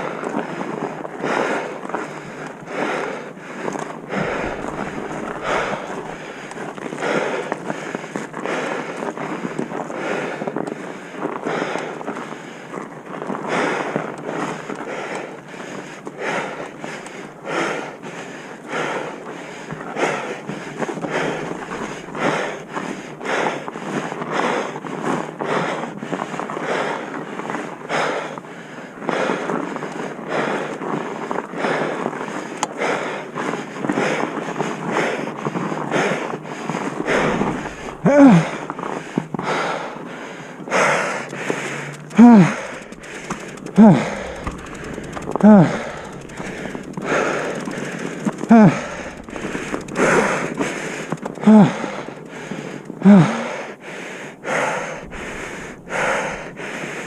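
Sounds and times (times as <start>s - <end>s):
person breathing hard: 0.0s - 12.8s, 13.4s - 57.0s
person grunting: 37.1s - 38.6s, 42.2s - 42.7s, 48.5s - 49.2s, 51.4s - 52.0s, 53.0s - 53.6s.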